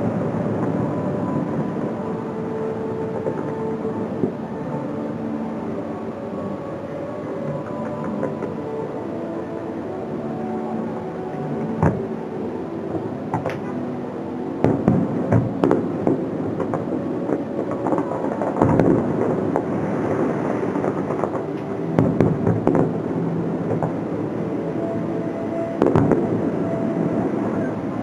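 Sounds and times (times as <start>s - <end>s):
fireworks bangs and crackles: 0.0s - 4.8s, 11.4s - 12.1s, 14.5s - 28.0s
music playing: 0.0s - 28.0s.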